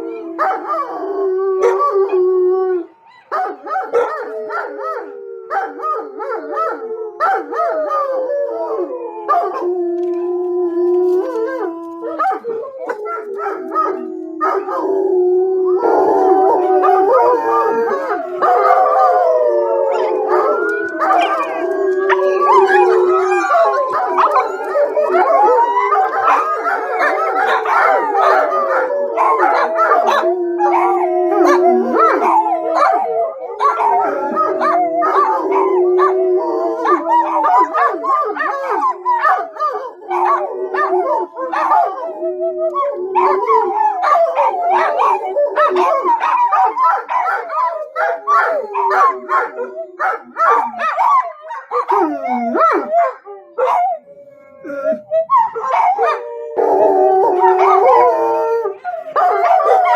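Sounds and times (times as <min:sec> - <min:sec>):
dogs barking and yipping: 0:00.0 - 0:02.2, 0:03.1 - 0:15.2, 0:15.8 - 0:54.0, 0:54.7 - 0:59.9
dogs howling: 0:00.0 - 0:59.9.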